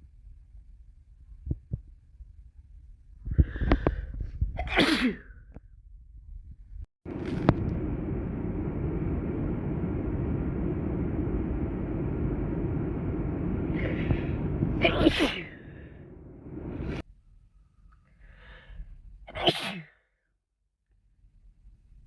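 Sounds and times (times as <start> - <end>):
person sneezing: 4.6 - 5.3, 13.8 - 15.8, 19.3 - 20.0
low rushing background noise: 7.1 - 17.0.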